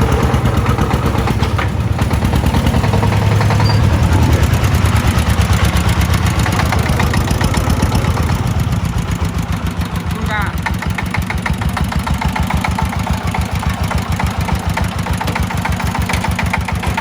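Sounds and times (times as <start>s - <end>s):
diesel engine chugging: 0.0s - 17.0s.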